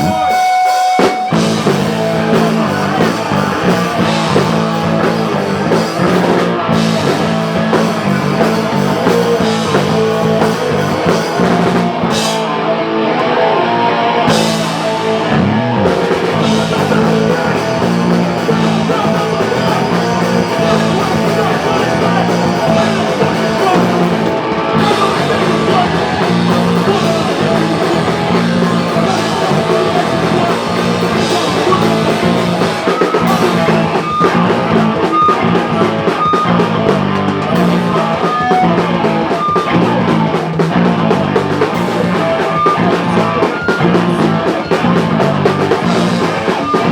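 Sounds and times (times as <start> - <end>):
drum kit: 0.0 - 13.4, 14.2 - 46.9
electric guitar: 0.0 - 46.9
rock band playing: 0.0 - 46.9.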